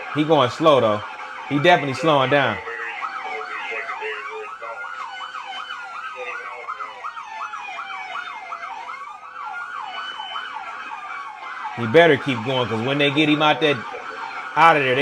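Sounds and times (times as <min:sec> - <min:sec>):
police siren fast yelp: 0:00.0 - 0:15.0
police siren slow wail: 0:00.0 - 0:15.0.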